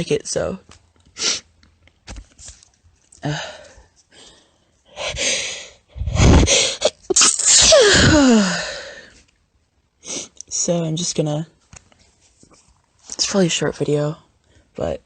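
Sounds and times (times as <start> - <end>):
woman sneezing: 6.1 - 8.7.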